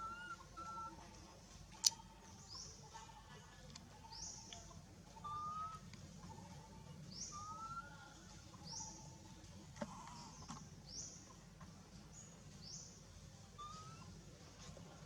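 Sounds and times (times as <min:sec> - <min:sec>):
faint birds chirping: 0:00.0 - 0:15.0.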